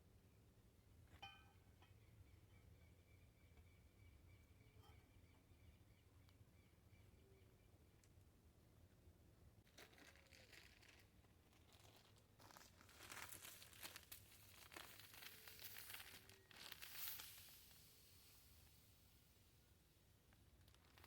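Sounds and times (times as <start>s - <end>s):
faint crinkling and rustling: 9.6s - 21.0s.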